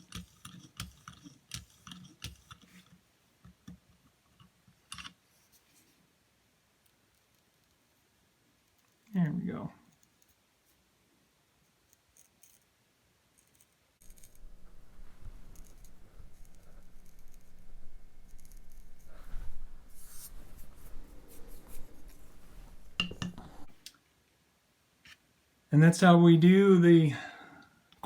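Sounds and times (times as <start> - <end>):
knife cutting paper: 14.0 - 19.3
low hum: 14.0 - 23.8.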